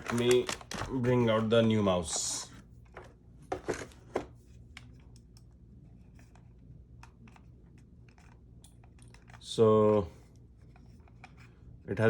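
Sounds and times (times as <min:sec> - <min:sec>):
mouse and plastic packaging clicks: 0:00.0 - 0:01.0
faint low hum: 0:00.0 - 0:12.0.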